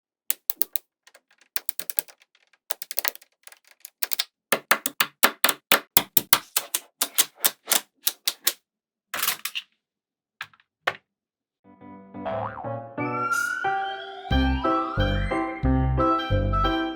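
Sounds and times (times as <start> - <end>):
magnetic balls clicking: 0.3 - 8.6.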